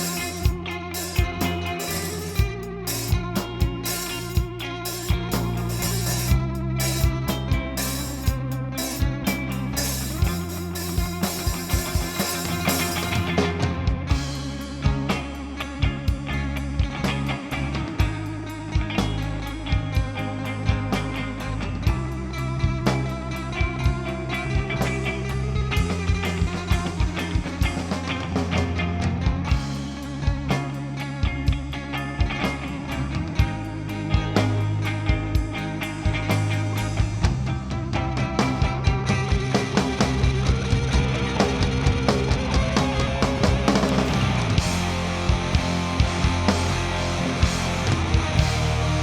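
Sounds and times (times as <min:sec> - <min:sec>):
drum kit beat: 0:00.0 - 0:15.2, 0:38.6 - 0:49.0
bass guitar: 0:00.0 - 0:49.0
electric guitar: 0:00.0 - 0:49.0.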